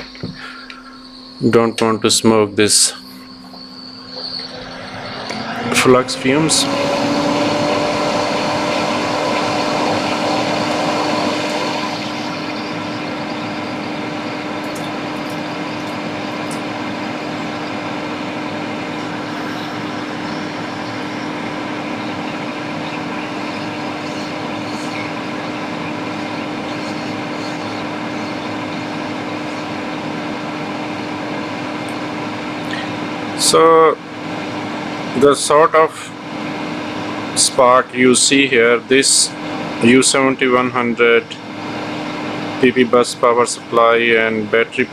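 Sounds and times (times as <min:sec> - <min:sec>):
extractor fan humming: 0:00.0 - 0:44.9.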